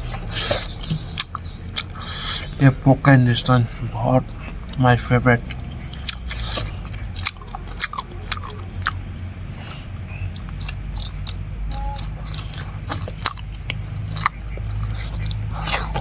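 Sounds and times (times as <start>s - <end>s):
close chewing and crunching: 0.0s - 16.0s
low steady hum: 0.0s - 16.0s
wet mouth clicks: 5.5s - 16.0s.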